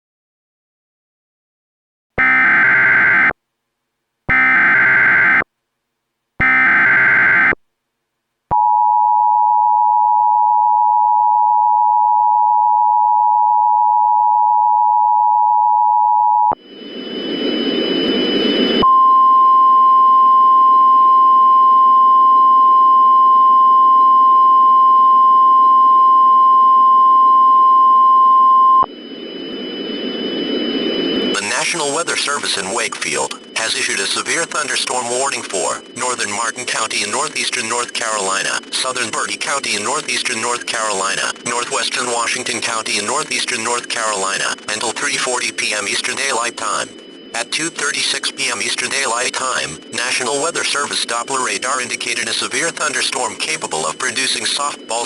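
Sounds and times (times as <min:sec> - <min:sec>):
single-tone warning alarm: 0:02.2 - 0:03.3, 0:04.3 - 0:05.4, 0:06.4 - 0:07.6, 0:08.6 - 0:55.0
two-tone attention signal: 0:02.2 - 0:03.3, 0:04.3 - 0:05.4, 0:06.4 - 0:07.6, 0:30.4 - 0:55.0
radio static hiss: 0:28.8 - 0:55.0
digital data bursts: 0:31.0 - 0:55.0.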